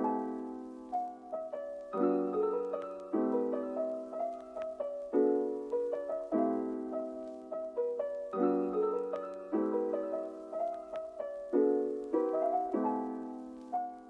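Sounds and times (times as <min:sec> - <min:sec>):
slow solo piano: 0:00.0 - 0:14.0.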